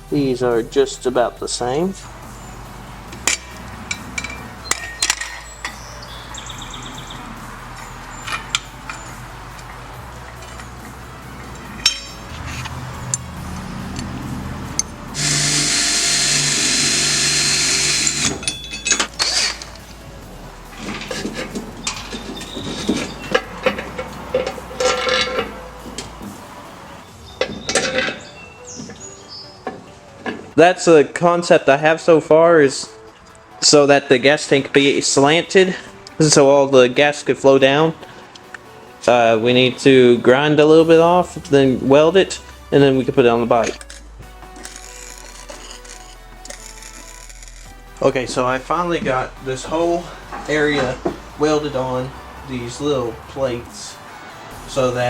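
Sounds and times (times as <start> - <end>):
metal pipes clicking and clinking: 3.1 - 5.8, 7.8 - 13.2, 18.2 - 20.0, 20.7 - 26.2, 27.4 - 28.3
metal parts clanking: 3.2 - 5.8, 8.2 - 12.7, 17.9 - 20.0, 20.7 - 26.1, 27.4 - 28.3, 43.5 - 47.7
metallic ring: 3.2 - 5.8, 11.4 - 12.3, 18.3 - 19.6, 21.8 - 25.7.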